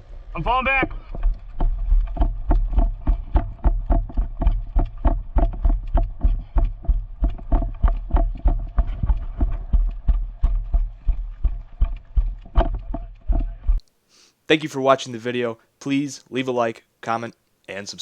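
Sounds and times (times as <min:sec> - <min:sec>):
heavy running footsteps: 0:00.8 - 0:13.8
gear rattling: 0:01.0 - 0:13.8.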